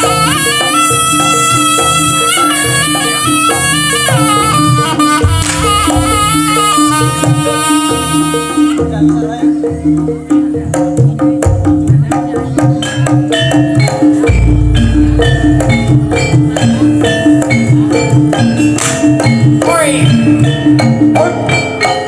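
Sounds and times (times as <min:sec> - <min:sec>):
wind instrument melody: 0:00.0 - 0:09.1, 0:13.2 - 0:22.0
drums beating: 0:00.0 - 0:22.0
deep low tone: 0:14.3 - 0:17.8.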